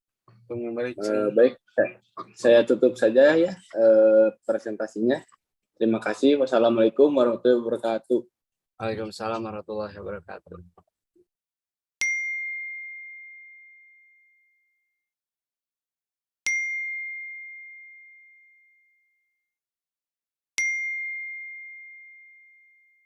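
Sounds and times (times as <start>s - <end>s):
high bell ding: 12.0s - 14.8s, 16.5s - 19.1s, 20.6s - 23.0s.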